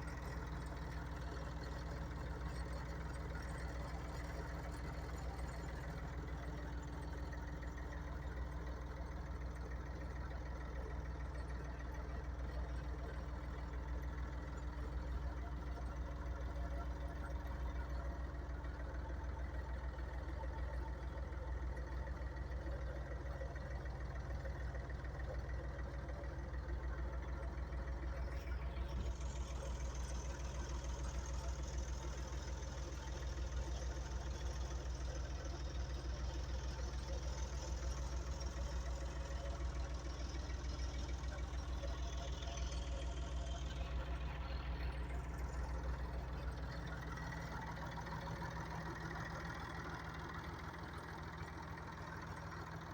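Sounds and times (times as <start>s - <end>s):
tractor diesel engine running: 0.0s - 52.9s.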